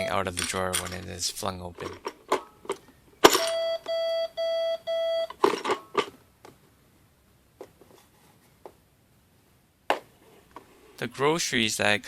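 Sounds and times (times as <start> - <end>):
cash register click: 3.3 - 3.8.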